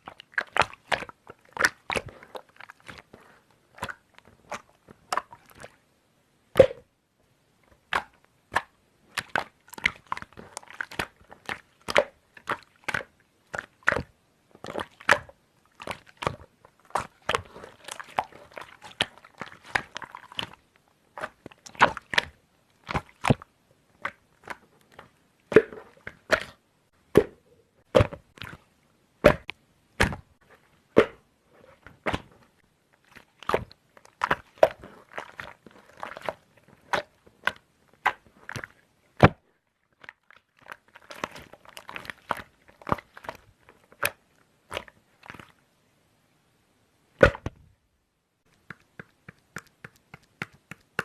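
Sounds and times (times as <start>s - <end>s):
soft slime crackle: 0.0s - 5.9s, 7.7s - 26.6s, 29.4s - 45.7s
slime clicking and popping: 48.5s - 51.0s.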